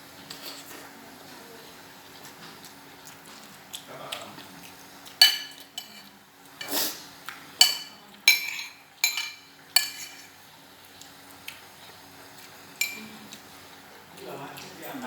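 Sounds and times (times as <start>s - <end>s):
cutlery clinking against a dish: 5.1s - 6.8s, 7.6s - 10.4s, 12.8s - 13.1s
cutlery scrape: 5.2s - 7.0s, 7.6s - 10.4s.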